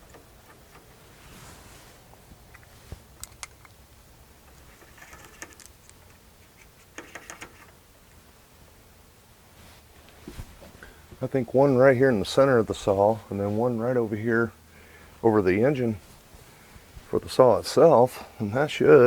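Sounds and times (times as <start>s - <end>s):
rustling: 0.0s - 3.8s, 9.4s - 11.3s, 15.9s - 17.3s
small parts clicking: 2.5s - 3.8s, 4.5s - 7.7s.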